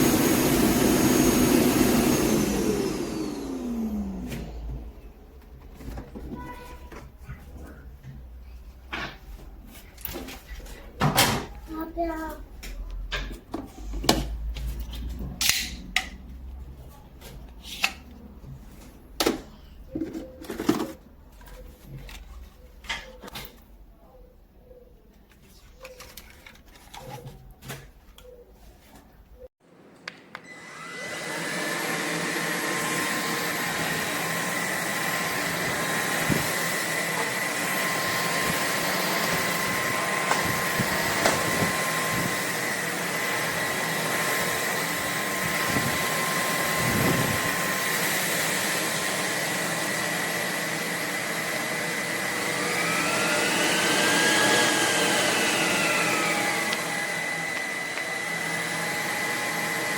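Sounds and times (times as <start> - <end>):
vacuum motor whining: 0.0 - 5.3, 30.4 - 59.9.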